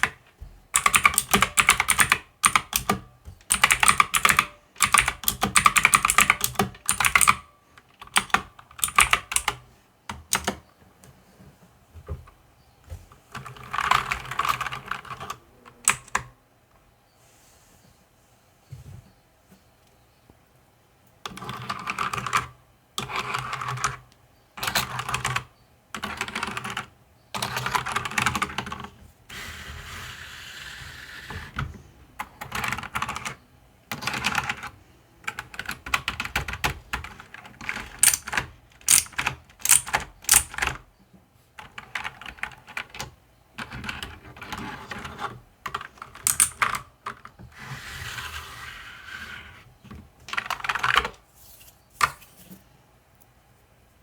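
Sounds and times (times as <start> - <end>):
mechanical keyboard typing: 0.0 - 10.6, 13.3 - 16.3, 24.6 - 29.0, 32.2 - 40.8, 41.6 - 47.3.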